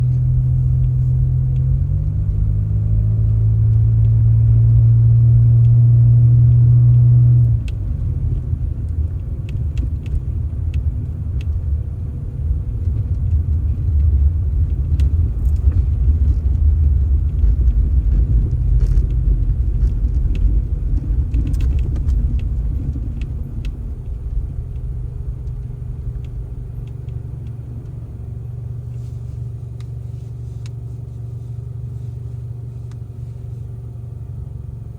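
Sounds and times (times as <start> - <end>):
heavy engine humming: 0.0 - 34.9
rough low rumble: 0.0 - 34.9.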